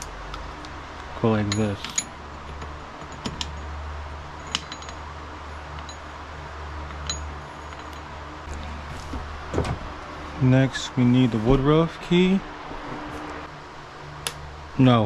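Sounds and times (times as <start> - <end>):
metallic clicks and clinks: 1.3 - 3.8, 4.4 - 5.0, 6.9 - 8.1.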